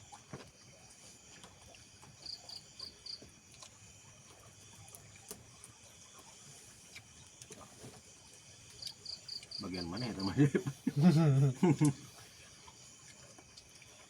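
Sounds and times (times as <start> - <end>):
crickets chirping: 0.6 - 4.7, 8.1 - 14.0.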